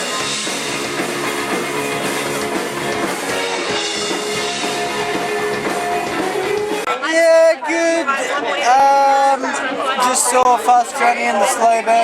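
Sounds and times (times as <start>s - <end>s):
drum beat: 0.0s - 6.9s
rock band playing live: 0.0s - 7.0s.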